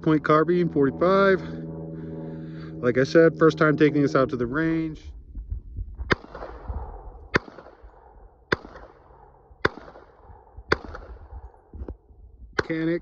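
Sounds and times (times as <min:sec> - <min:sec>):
gunshots with echo: 0:06.1 - 0:11.4.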